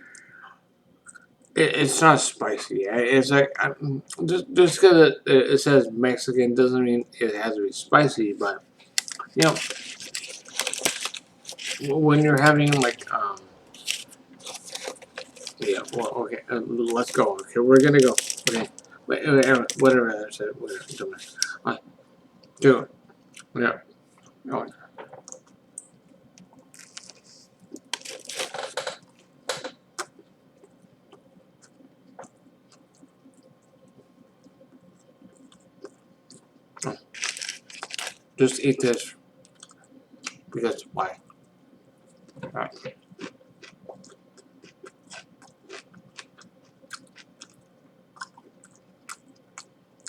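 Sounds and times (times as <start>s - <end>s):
crinkling crunching handling noise: 8.4s - 21.6s, 26.4s - 30.2s, 36.8s - 40.4s
person chewing crunchy food: 8.8s - 20.0s, 26.4s - 38.3s, 42.1s - 49.8s.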